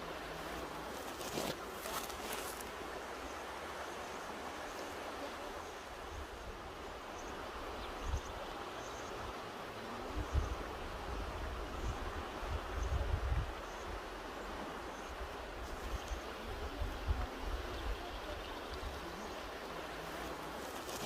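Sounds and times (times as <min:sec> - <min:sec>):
river rushing over rocks: 0:00.0 - 0:08.0, 0:13.4 - 0:21.0.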